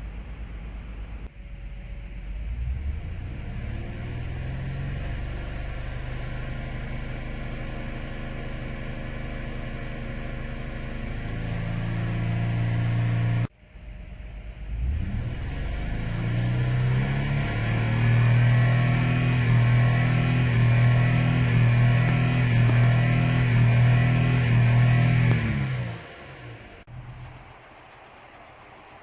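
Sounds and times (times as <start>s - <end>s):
car engine misfiring: 17.2s - 28.7s.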